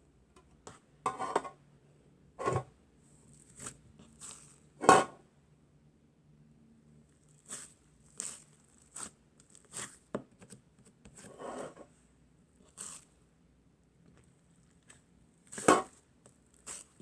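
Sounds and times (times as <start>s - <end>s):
slime squishing: 7.0s - 10.5s, 12.6s - 13.2s, 14.0s - 17.0s.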